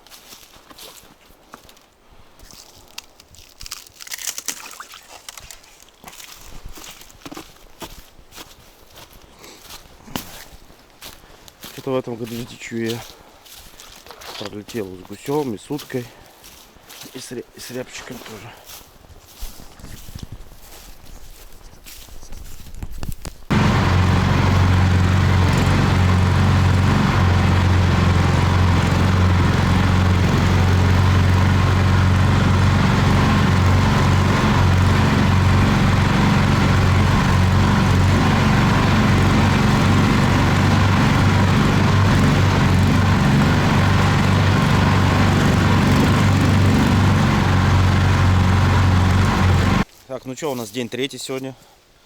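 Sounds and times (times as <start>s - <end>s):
vehicle engine humming: 23.5s - 49.8s.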